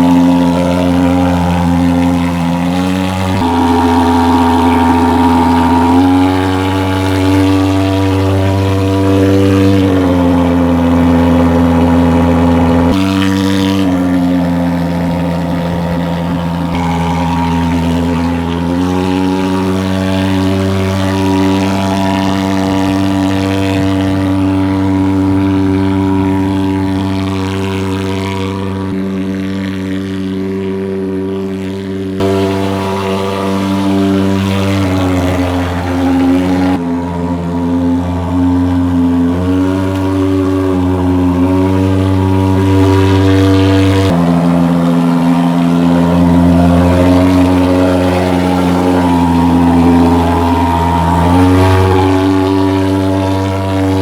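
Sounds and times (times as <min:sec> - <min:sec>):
fogging machine buzzing drone: 0:00.0 - 0:54.0.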